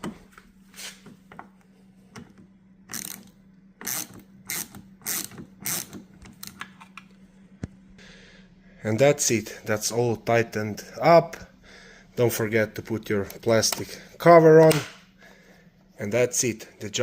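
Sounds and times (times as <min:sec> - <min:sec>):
ratchet wrench clicking: 0:02.9 - 0:06.6.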